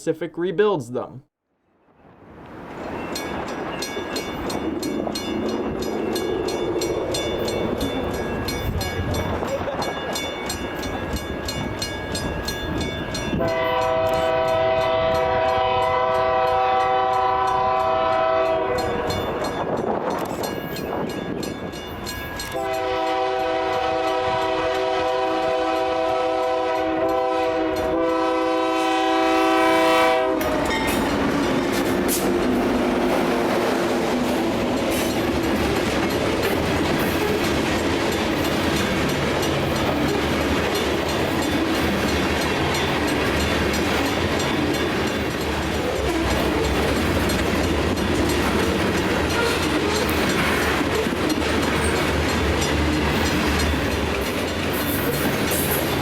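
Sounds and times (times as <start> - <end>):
locomotive running past: 2.2 - 56.0
locomotive air horn: 13.4 - 19.2, 22.5 - 30.8, 49.3 - 49.8
freight cars rumbling and clacking: 30.4 - 56.0.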